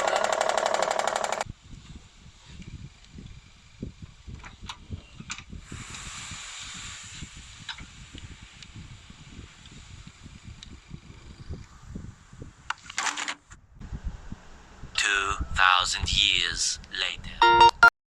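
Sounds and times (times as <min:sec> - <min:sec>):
brief hiss: 0:05.6 - 0:10.2.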